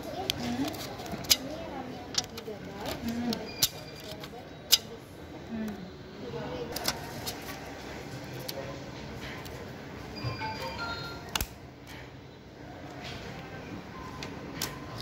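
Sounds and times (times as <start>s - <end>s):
quiet background music: 9.5s - 12.3s.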